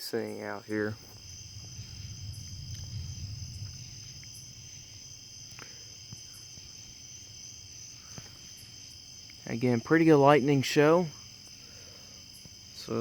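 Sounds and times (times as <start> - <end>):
crickets singing: 0.0 - 13.0
low rumble: 1.0 - 6.6.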